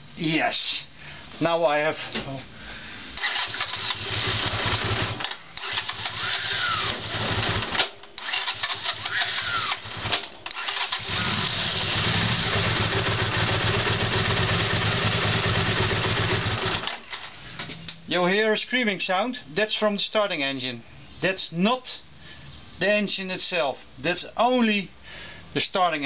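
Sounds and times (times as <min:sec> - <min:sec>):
engine clacking against starter: 0:03.2 - 0:14.4
starter motor whine: 0:03.2 - 0:17.2
motorcycle engine idling: 0:03.3 - 0:05.2, 0:06.1 - 0:07.8, 0:10.7 - 0:16.8.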